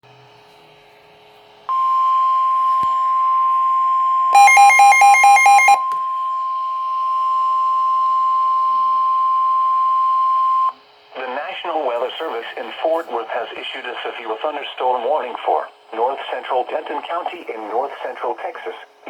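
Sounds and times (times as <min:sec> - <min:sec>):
steady alarm tone: 0:01.7 - 0:10.7
fast beeps: 0:04.4 - 0:05.8.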